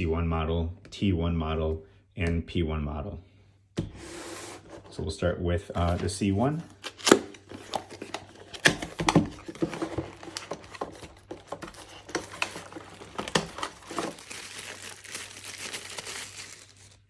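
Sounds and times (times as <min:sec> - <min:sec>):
packaging rustling and crinkling: 0:05.8 - 0:17.0.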